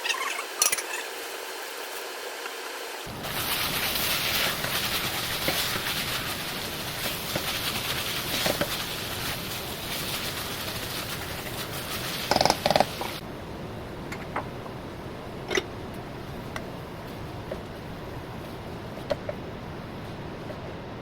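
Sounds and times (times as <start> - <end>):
chicken sizzling in frying pan: 3.1 - 13.2.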